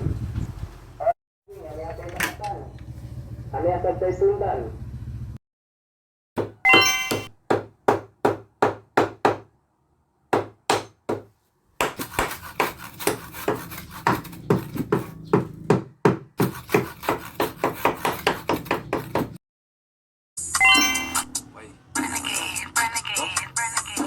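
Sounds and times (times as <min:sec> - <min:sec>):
hammer striking wood: 0:06.4 - 0:09.5, 0:10.3 - 0:19.4.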